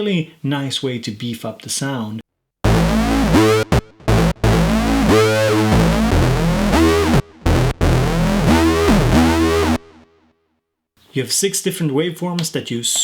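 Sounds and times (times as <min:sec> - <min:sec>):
analog synthesizer bass notes: 0:02.6 - 0:10.1.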